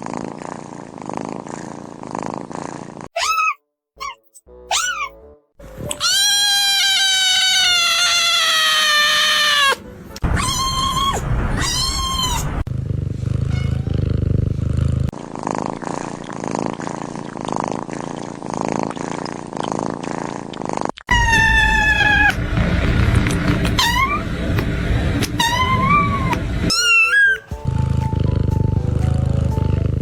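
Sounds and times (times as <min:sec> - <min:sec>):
kitten purring: 0:00.0 - 0:03.1, 0:11.2 - 0:30.0
kittens meowing: 0:06.0 - 0:12.6, 0:21.1 - 0:22.4.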